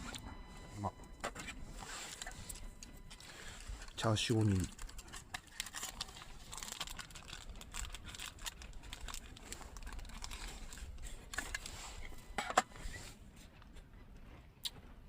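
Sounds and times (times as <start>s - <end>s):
plastic wrapper crinkling: 2.1s - 11.7s.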